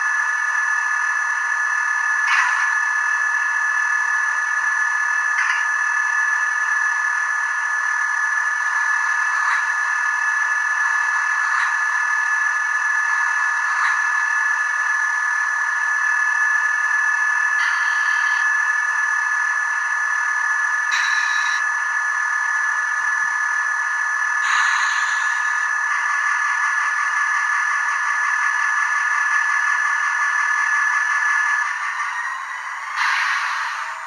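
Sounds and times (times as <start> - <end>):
tinny diesel engine drone: 31.3 - 34.0.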